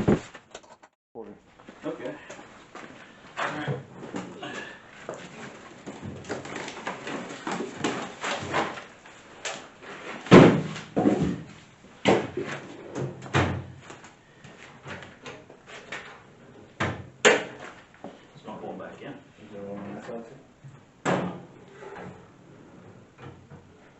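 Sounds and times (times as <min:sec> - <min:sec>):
drawer sliding and banging: 0:00.0 - 0:00.3
clunks and knocks from metal cart: 0:10.3 - 0:13.7.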